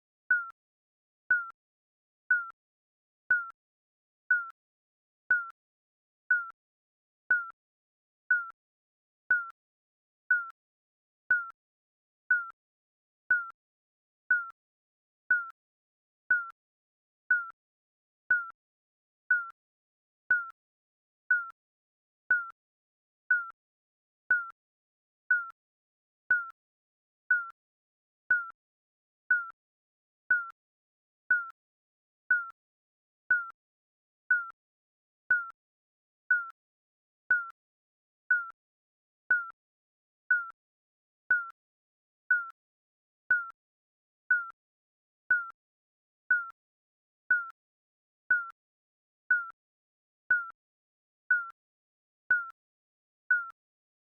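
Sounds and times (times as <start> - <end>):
high electronic timer beeps: 0.3 - 0.5, 1.3 - 1.5, 2.3 - 2.5, 3.3 - 3.5, 4.3 - 4.5, 5.3 - 5.5, 6.3 - 6.5, 7.3 - 7.5, 8.3 - 8.5, 9.3 - 9.5, 10.3 - 10.5, 11.3 - 11.5, 12.3 - 12.5, 13.3 - 13.5, 14.3 - 14.6, 15.3 - 15.5, 16.3 - 16.5, 17.3 - 17.5, 18.3 - 18.5, 19.3 - 19.5, 22.3 - 22.5, 23.3 - 23.5, 24.3 - 24.5, 28.3 - 28.5, 29.3 - 29.6, 30.3 - 30.5, 31.3 - 31.5, 32.3 - 32.6, 33.3 - 33.5, 34.3 - 34.6, 35.3 - 35.5, 37.3 - 37.6, 38.3 - 38.6, 39.3 - 39.6, 40.3 - 40.6, 41.3 - 41.6, 43.3 - 43.6, 44.3 - 44.6, 45.3 - 45.6, 46.3 - 46.6, 47.3 - 47.6, 48.3 - 48.6, 49.3 - 49.6, 53.3 - 53.6.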